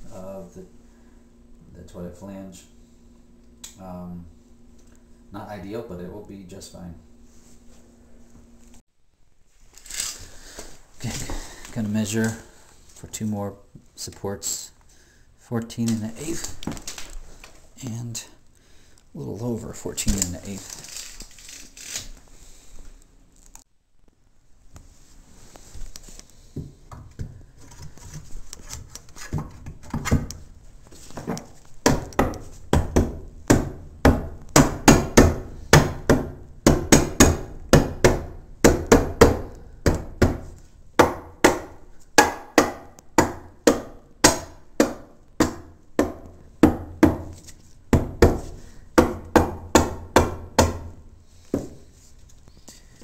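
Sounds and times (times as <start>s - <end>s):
hammer striking wood: 31.8s - 50.9s.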